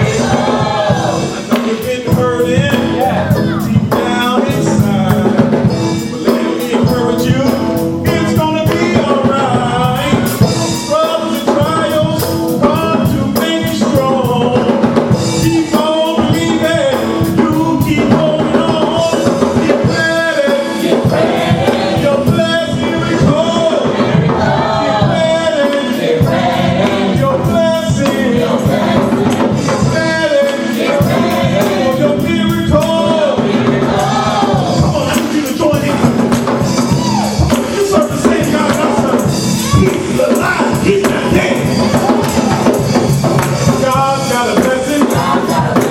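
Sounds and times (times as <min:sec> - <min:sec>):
drum and percussion beat: 0:00.0 - 0:45.9
voices singing gospel: 0:00.0 - 0:45.9.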